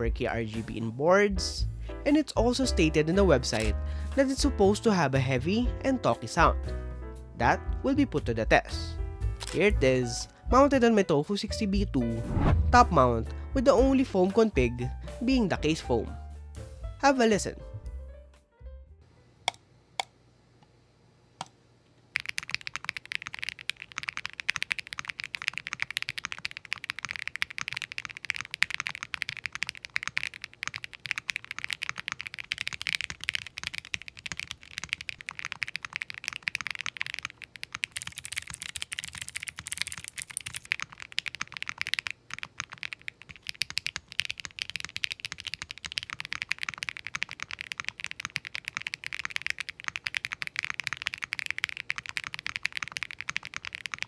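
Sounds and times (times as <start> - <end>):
fast keyboard typing: 3.4 - 4.4, 22.1 - 54.0.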